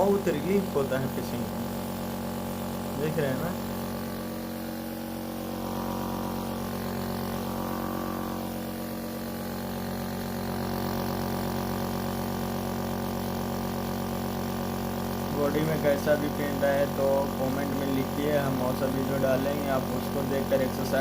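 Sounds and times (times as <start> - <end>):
steady machine hum: 0.0 - 21.0.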